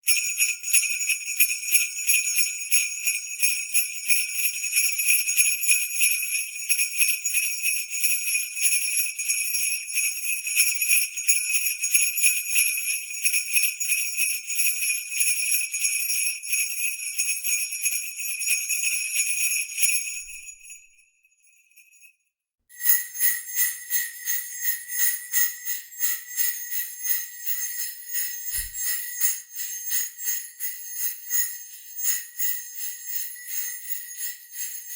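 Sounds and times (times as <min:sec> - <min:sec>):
small bells rattling: 0:22.8 - 0:34.9.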